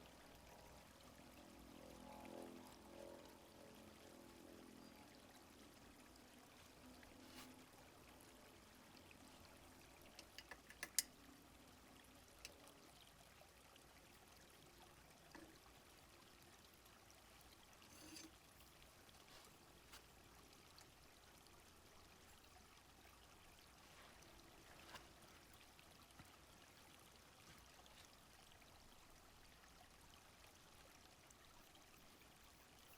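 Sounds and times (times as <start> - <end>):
small stream flowing: 0.0 - 32.9
small sharp clicks: 10.1 - 11.2.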